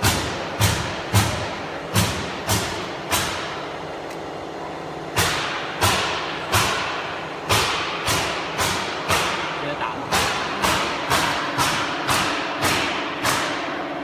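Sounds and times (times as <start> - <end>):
steady machine hum: 0.0 - 14.0.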